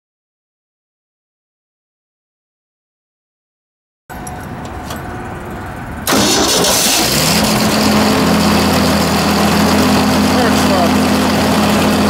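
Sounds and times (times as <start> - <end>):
wood chipper engine starting: 6.0 - 12.0.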